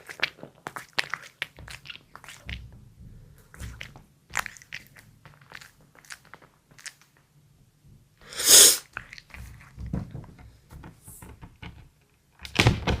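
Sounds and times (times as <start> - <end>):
cat chewing with crunching: 0.0 - 7.2, 8.8 - 10.1
cat sneezing: 8.2 - 8.9.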